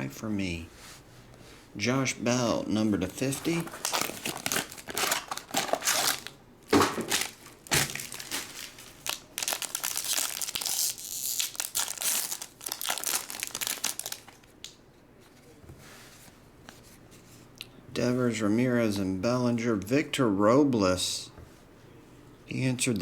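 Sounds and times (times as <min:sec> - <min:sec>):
card pack wrappers crinkling and tearing: 0:03.0 - 0:14.5.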